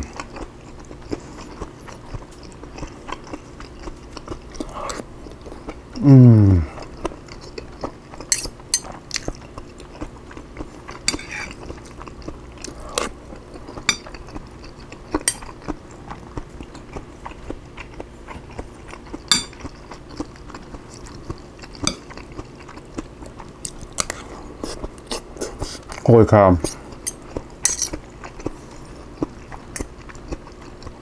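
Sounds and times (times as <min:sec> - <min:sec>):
person chewing food: 0:00.0 - 0:31.0
cutlery clicking against a dish: 0:08.3 - 0:09.0, 0:11.1 - 0:11.5, 0:15.3 - 0:15.5, 0:26.6 - 0:28.0.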